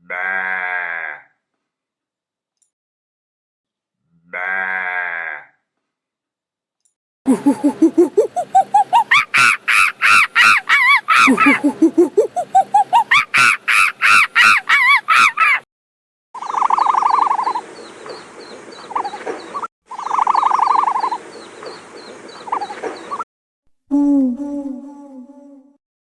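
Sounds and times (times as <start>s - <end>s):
pulsing animal call: 7.3s - 9.6s, 11.1s - 13.6s
rapid pitched animal calls: 7.3s - 15.6s, 19.9s - 21.2s.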